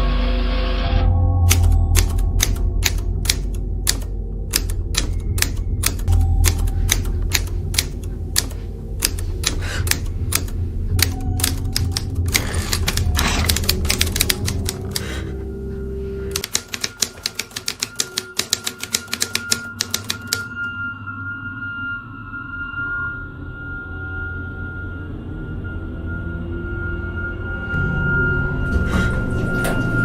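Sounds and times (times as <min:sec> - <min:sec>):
low steady drone: 0:00.0 - 0:16.5
typewriter keys clacking: 0:01.5 - 0:15.2, 0:16.3 - 0:20.5.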